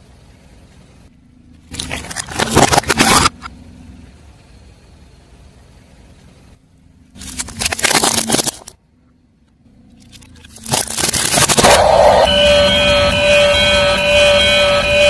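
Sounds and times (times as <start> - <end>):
low hum: 0.0 - 15.0
tyre crushing crunchy objects: 1.7 - 3.4, 7.2 - 8.8, 10.2 - 12.1.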